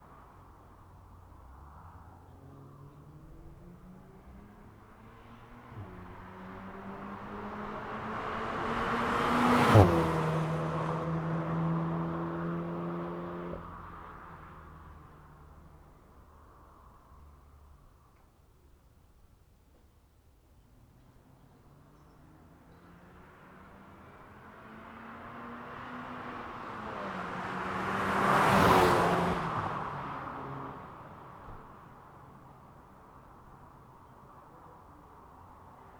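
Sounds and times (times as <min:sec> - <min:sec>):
car engine driving past: 0:01.8 - 0:14.9, 0:21.6 - 0:31.7.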